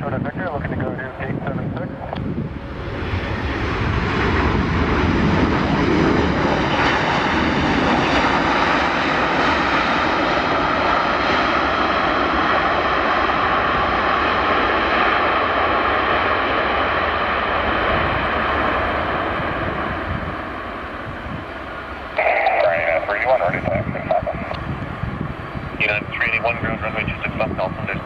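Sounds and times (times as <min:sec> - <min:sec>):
jet engines whining and rushing: 0:00.0 - 0:28.0.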